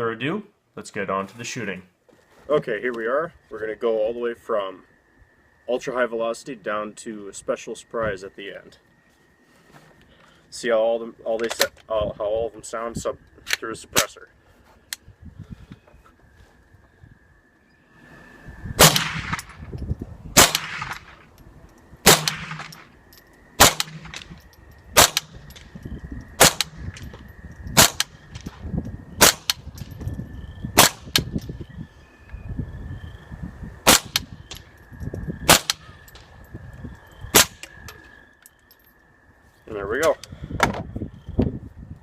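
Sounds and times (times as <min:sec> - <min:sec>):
suppressed gunshots: 0:18.8 - 0:19.6, 0:20.4 - 0:21.1, 0:22.1 - 0:22.8, 0:23.6 - 0:24.4, 0:25.0 - 0:25.4, 0:26.4 - 0:27.0, 0:27.8 - 0:28.1, 0:33.9 - 0:34.3, 0:35.5 - 0:35.8
gun action clanking: 0:22.1 - 0:22.9, 0:23.6 - 0:25.7.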